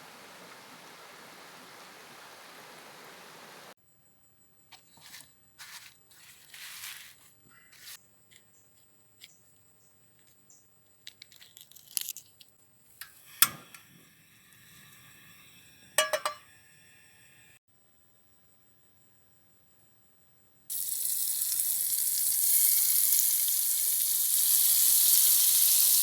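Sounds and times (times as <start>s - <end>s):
rustling and crinkling: 4.7s - 13.0s
ringing clinks: 16.0s - 16.5s.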